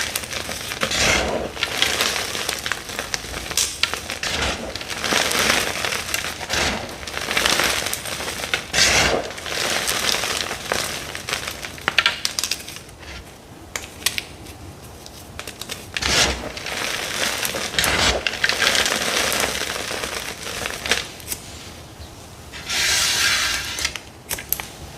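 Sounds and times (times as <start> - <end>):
chalk blocks crunching: 0.0 - 21.5.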